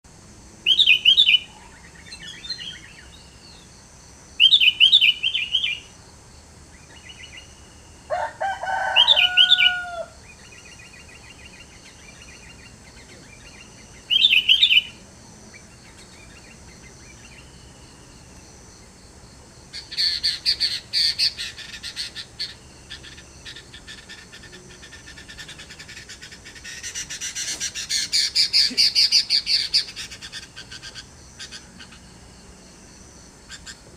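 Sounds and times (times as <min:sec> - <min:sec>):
rapid chattering bird calls: 0:19.7 - 0:32.2, 0:33.4 - 0:33.9.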